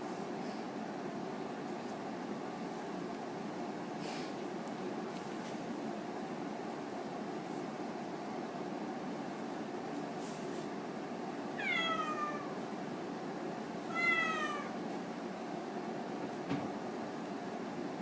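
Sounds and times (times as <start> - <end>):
kitten meowing: 11.6 - 12.5, 13.9 - 14.8.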